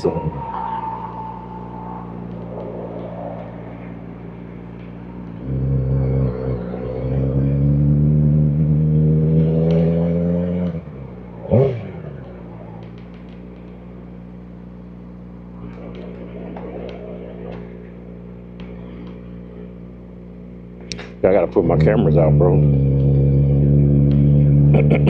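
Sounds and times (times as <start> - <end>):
motorcycle engine rev blip: 0.0 - 25.0
motorcycle engine running: 1.2 - 25.0.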